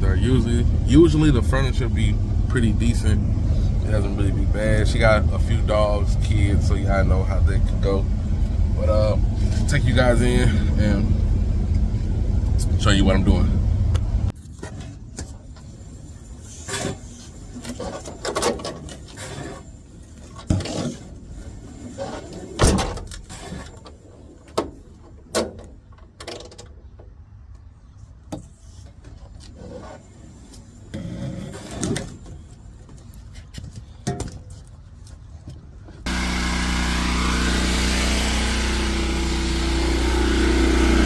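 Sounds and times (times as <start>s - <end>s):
low steady rumble: 0.0s - 14.4s.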